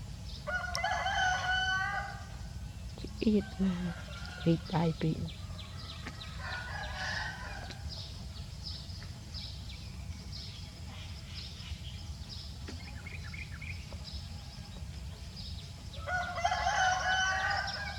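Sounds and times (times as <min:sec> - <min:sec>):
rooster crowing: 0:00.5 - 0:02.3, 0:05.4 - 0:07.8, 0:16.0 - 0:17.9
small birds chirping: 0:02.7 - 0:17.9.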